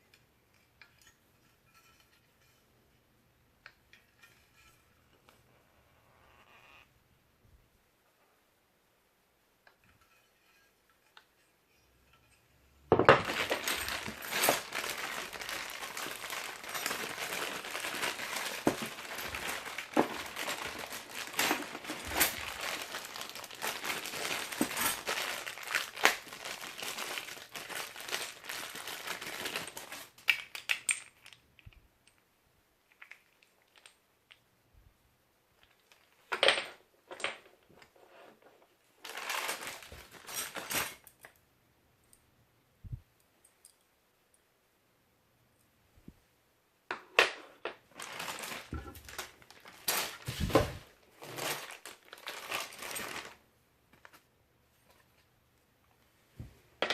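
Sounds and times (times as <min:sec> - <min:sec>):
packaging crinkling and rustling: 0:13.1 - 0:31.4, 0:39.0 - 0:41.1, 0:47.6 - 0:54.3.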